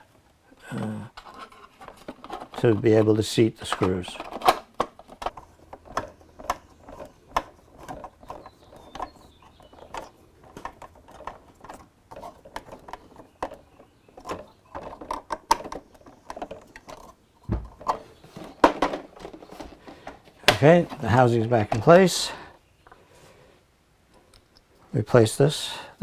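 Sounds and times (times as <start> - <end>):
plastic housing clicks and taps: 3.7 - 13.6.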